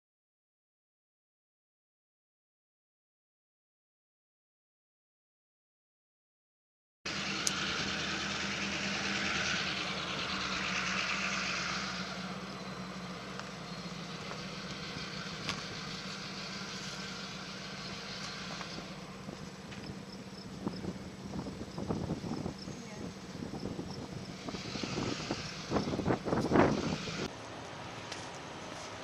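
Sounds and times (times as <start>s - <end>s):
train clicks: 7.1s - 11.0s, 13.2s - 20.8s
train wheels rushing on rail: 7.1s - 27.3s.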